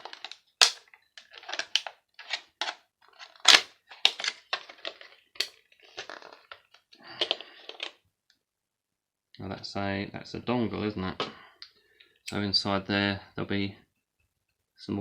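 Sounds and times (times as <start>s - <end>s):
plastic device being pried apart: 0.0s - 5.5s.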